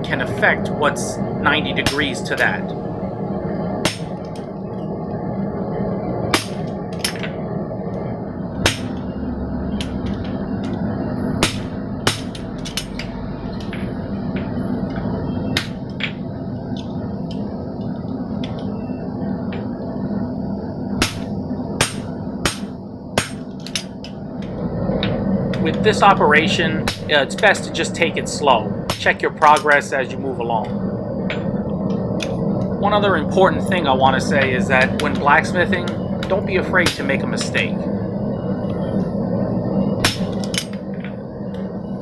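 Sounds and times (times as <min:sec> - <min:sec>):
steady hum: 0:00.0 - 0:42.0
hammer striking hot steel: 0:03.8 - 0:04.4, 0:06.3 - 0:07.4, 0:08.6 - 0:09.0, 0:11.4 - 0:13.1, 0:15.5 - 0:16.2, 0:21.0 - 0:23.9, 0:26.8 - 0:27.4, 0:28.9 - 0:29.8, 0:34.3 - 0:37.7, 0:40.0 - 0:41.0.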